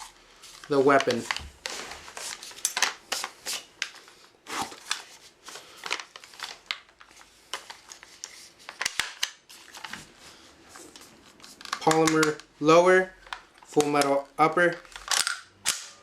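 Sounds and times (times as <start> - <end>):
box packaging rustling and scraping: 0.0 - 8.9, 9.5 - 11.9.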